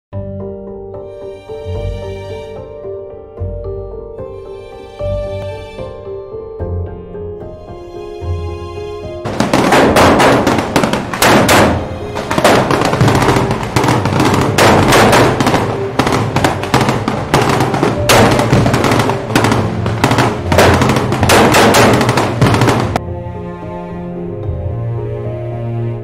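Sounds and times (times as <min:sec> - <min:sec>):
background music: 0:00.1 - 0:26.0
dense gunfire: 0:09.3 - 0:23.0.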